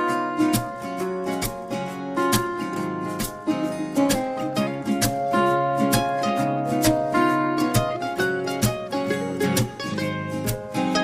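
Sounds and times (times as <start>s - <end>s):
plucked acoustic guitar music: 0.0s - 11.0s.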